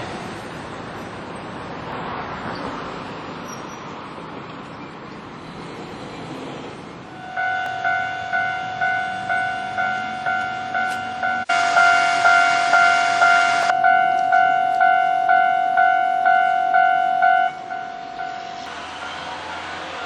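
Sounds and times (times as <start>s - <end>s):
rushing noise: 5.4s - 14.7s, 17.5s - 20.0s
level crossing warning bell ringing: 7.1s - 20.0s.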